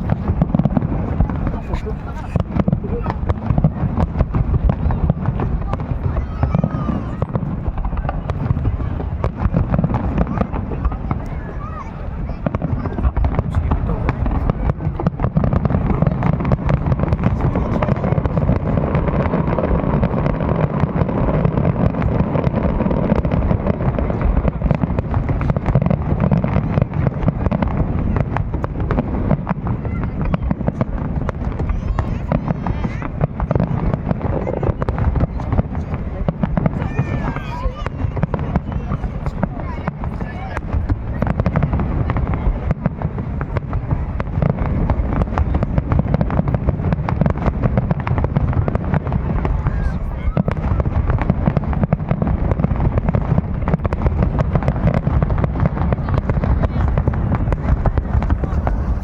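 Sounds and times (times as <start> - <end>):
fireworks popping and crackling: 0.0 - 59.0.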